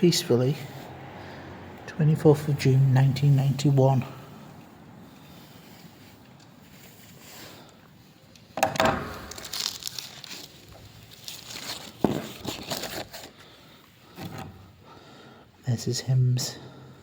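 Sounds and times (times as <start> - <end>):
paper pages rustling and crinkling: 9.0 - 13.5.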